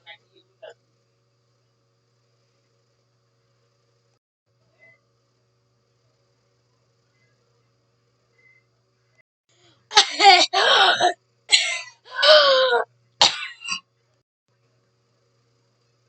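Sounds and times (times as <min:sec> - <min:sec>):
person coughing: 0:09.9 - 0:13.8.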